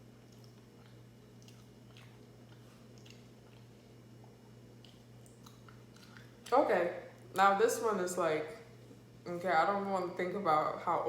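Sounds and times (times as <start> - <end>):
chewing with mouth clicks: 0.0 - 7.4
low steady hum: 0.0 - 11.0.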